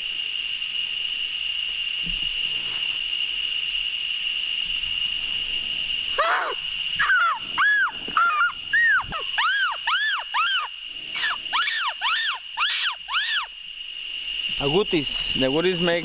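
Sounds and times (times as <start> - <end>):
rainforest insects droning: 0.0 - 16.0
agouti distress screams: 6.1 - 13.6.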